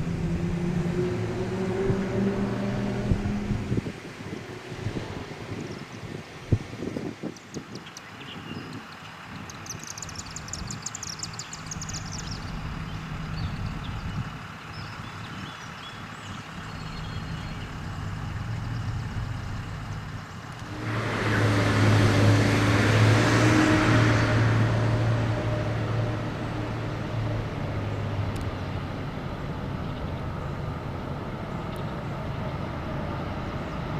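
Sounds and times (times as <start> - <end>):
diesel locomotive engine drone: 0.0 - 33.9
rushing noise: 16.8 - 28.3.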